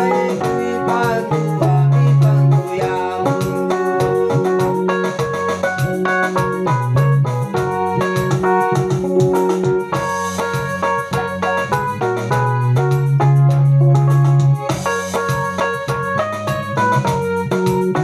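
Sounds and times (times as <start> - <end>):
electronic keyboard music: 0.0 - 18.0.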